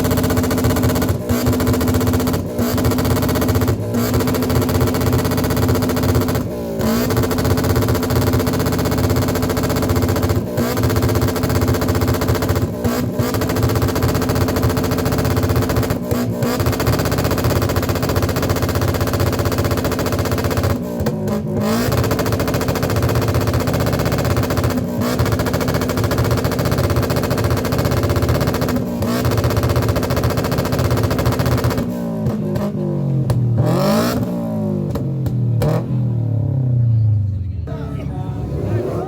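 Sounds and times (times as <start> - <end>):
motorcycle engine at high revs: 0.0 - 36.9.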